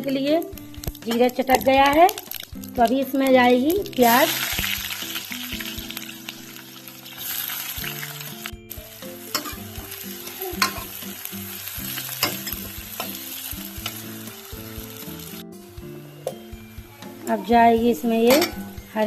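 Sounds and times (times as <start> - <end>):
onion sizzling in oil: 0.2 - 19.0
spoon clicking against pan: 9.3 - 9.6, 10.6 - 10.9, 18.3 - 18.7.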